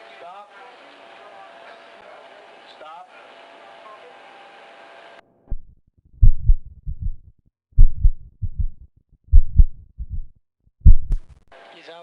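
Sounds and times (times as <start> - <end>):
heart beating in pairs: 5.5 - 11.3.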